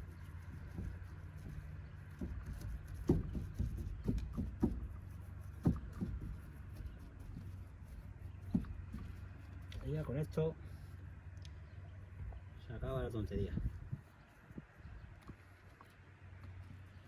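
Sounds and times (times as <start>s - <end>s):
steady low hum: 0.0s - 17.0s
knocks and taps: 0.5s - 9.2s.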